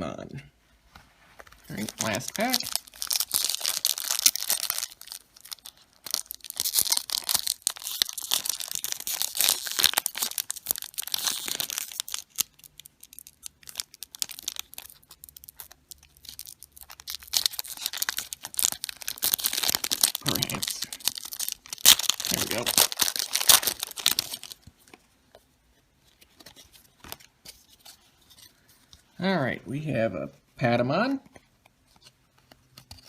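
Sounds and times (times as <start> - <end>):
cards being handled: 1.4 - 10.4, 22.0 - 29.1, 31.2 - 33.0
wrapper crinkling and tearing: 1.6 - 24.7.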